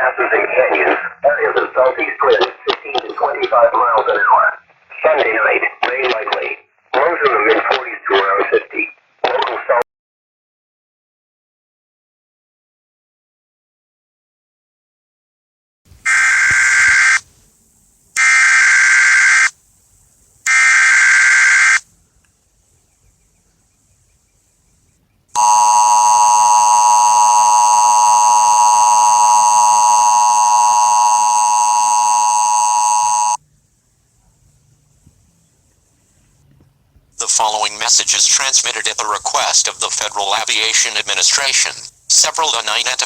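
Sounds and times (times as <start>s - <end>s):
screechy digital data tones: 25.4s - 33.4s
steady attention signal tone: 25.4s - 33.4s.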